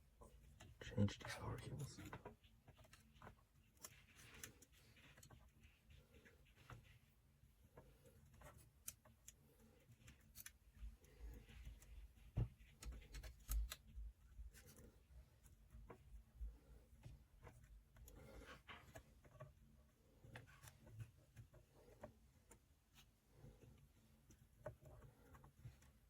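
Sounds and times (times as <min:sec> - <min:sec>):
rustling of cables handled: 0:00.2 - 0:26.0
clicks of plastic connectors: 0:12.8 - 0:14.0.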